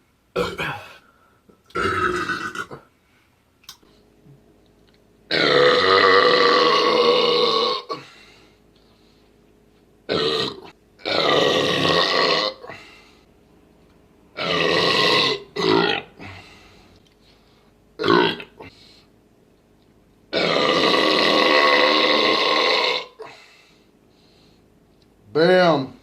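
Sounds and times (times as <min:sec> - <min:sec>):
men belching: 0:00.4 - 0:01.0, 0:01.7 - 0:02.9, 0:05.3 - 0:08.0, 0:10.1 - 0:12.6, 0:14.4 - 0:16.2, 0:20.3 - 0:23.2.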